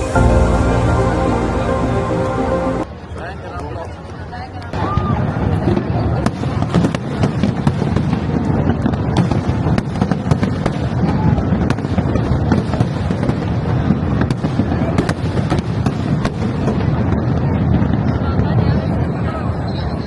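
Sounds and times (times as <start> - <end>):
aerial fireworks bursts: 4.8 - 20.0
sharp firework cracks: 6.2 - 18.5.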